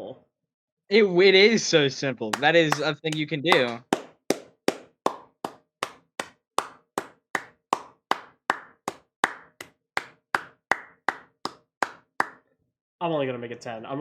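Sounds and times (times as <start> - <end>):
person clapping hands: 2.3 - 12.4.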